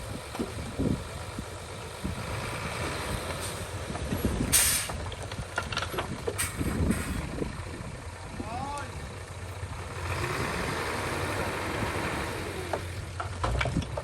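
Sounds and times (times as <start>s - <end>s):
heavy vehicle engine rumbling: 0.0s - 14.0s
short sharp hiss: 4.5s - 5.0s.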